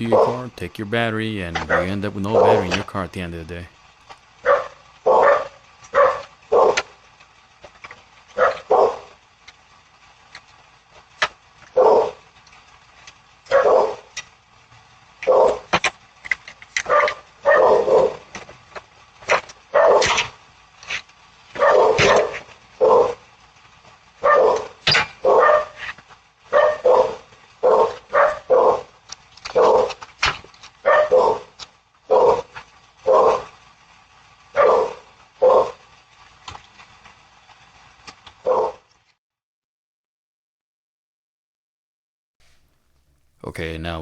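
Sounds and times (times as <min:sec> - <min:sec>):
dog barking: 0:04.4 - 0:06.9, 0:08.4 - 0:09.1, 0:13.5 - 0:14.0, 0:15.3 - 0:15.6, 0:16.8 - 0:18.2, 0:19.8 - 0:20.2, 0:21.6 - 0:23.2, 0:24.2 - 0:25.8, 0:26.5 - 0:28.9, 0:29.5 - 0:29.9, 0:30.8 - 0:31.5, 0:32.1 - 0:32.5, 0:33.1 - 0:33.5, 0:34.6 - 0:35.8, 0:38.5 - 0:38.8.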